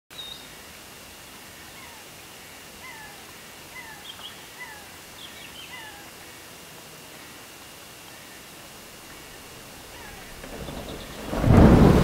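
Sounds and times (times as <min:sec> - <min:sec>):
rain: 0:00.1 - 0:12.0
river rushing: 0:07.2 - 0:12.0
short falling animal call: 0:09.8 - 0:12.0.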